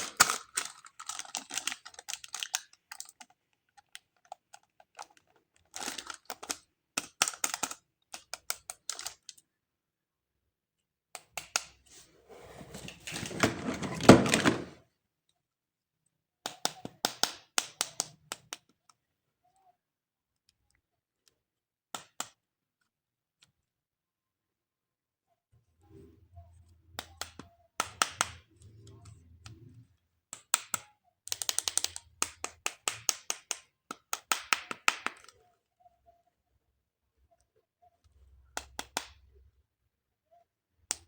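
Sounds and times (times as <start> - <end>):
plastic toys clicking: 30.4 - 35.4.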